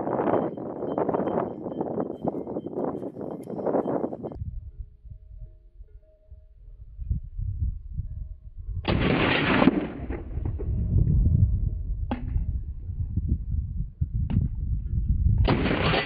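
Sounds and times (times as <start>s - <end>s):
steady low rumble: 4.3s - 15.9s
gunshots: 8.9s - 10.8s, 15.5s - 16.0s.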